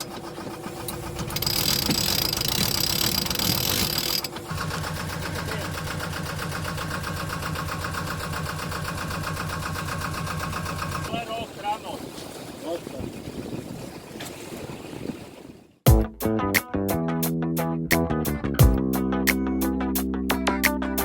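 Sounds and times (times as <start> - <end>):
boat engine running: 0.0 - 16.0.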